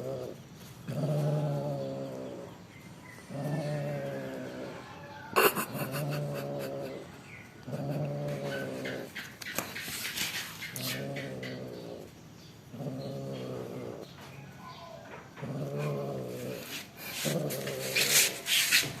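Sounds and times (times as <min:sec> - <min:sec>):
rasping noise: 0:15.8 - 0:19.0.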